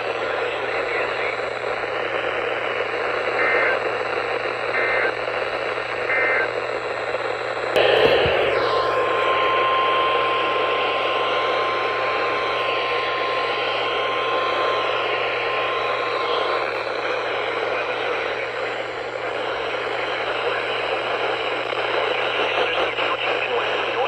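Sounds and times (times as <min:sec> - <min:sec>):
hissing radio static: 0:00.0 - 0:24.0
steady warning alarm tone: 0:07.8 - 0:20.0.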